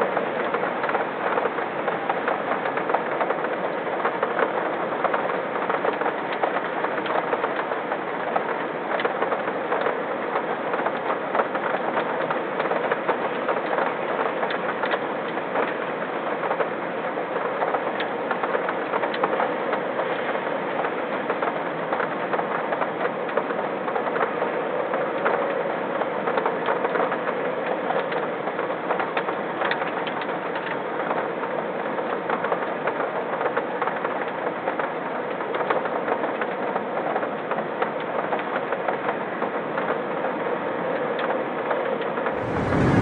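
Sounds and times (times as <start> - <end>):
steady rain: 0.0 - 43.0.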